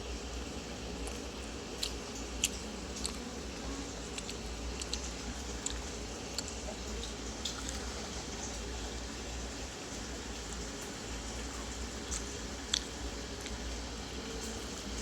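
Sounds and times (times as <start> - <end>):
chewing: 0.9 - 8.6, 10.4 - 15.0.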